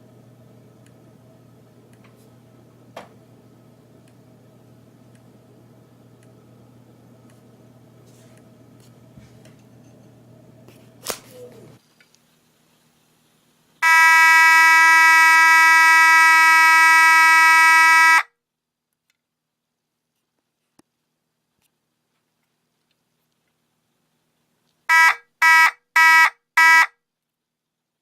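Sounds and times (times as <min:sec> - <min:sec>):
faint room hum: 0:00.0 - 0:28.0
fire alarm horn steady tone: 0:13.8 - 0:18.3, 0:24.9 - 0:27.0.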